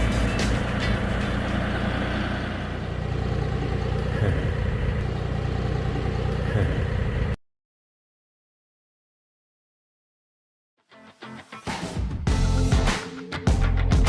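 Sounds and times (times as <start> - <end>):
vehicle engine humming: 0.0 - 7.4.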